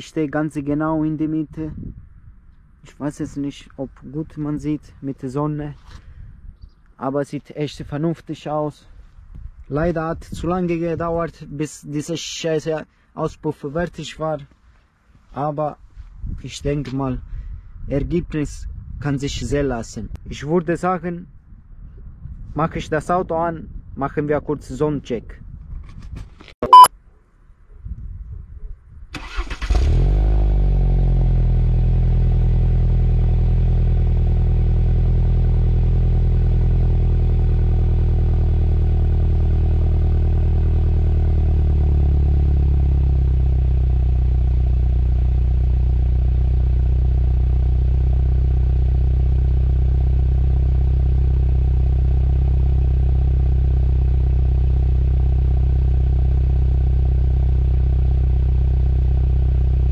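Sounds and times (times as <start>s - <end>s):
car engine starting and idling: 29.1s - 32.4s.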